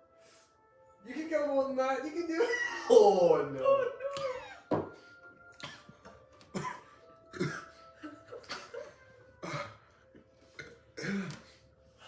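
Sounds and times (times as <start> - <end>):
person coughing and gagging: 2.4 - 3.1, 5.5 - 11.6.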